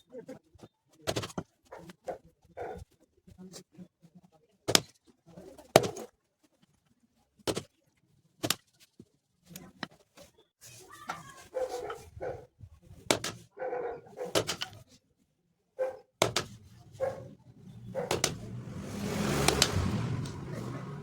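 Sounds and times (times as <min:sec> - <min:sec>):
dog barking: 0:01.7 - 0:02.9, 0:11.4 - 0:12.6, 0:13.5 - 0:14.5, 0:15.8 - 0:21.0
sharp clicks or knocks: 0:18.0 - 0:18.6.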